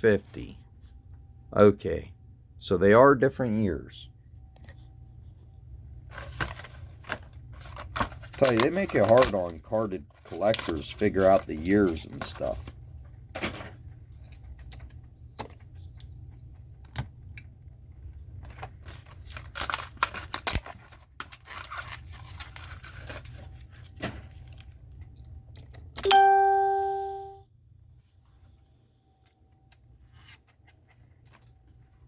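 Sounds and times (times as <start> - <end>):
plastic packaging crinkling and tearing: 6.1 - 12.7, 18.4 - 24.8
bell-like ding: 26.1 - 27.4.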